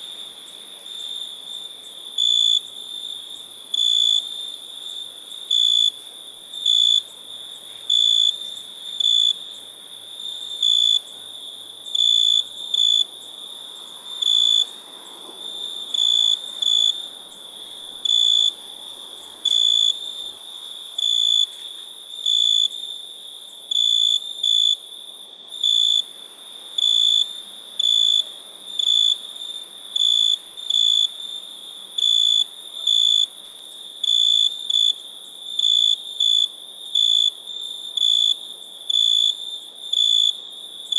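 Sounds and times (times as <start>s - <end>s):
cricket chirping: 0.0s - 40.9s.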